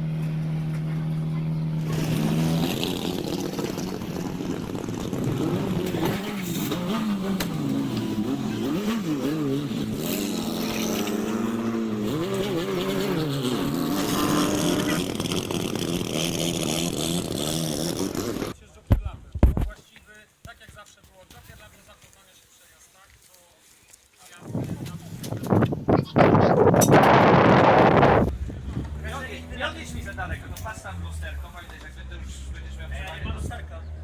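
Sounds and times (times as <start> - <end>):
race car engines revving: 0.0 - 18.6, 25.2 - 34.0
steady engine drone: 0.0 - 18.6, 26.2 - 34.0.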